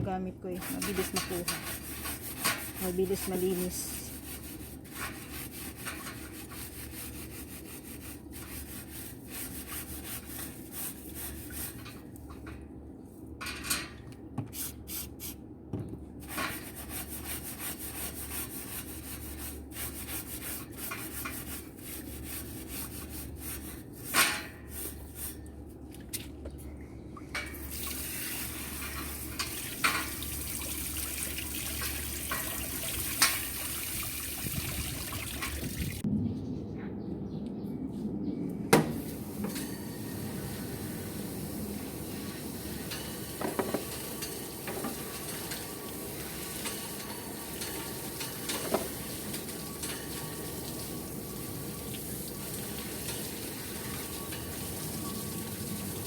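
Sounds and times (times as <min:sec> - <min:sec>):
scrubbing barbecue tools: 0:00.4 - 0:12.6, 0:16.2 - 0:25.6, 0:27.3 - 0:36.0, 0:38.9 - 0:56.0
running tap water: 0:27.6 - 0:36.0, 0:39.2 - 0:56.0.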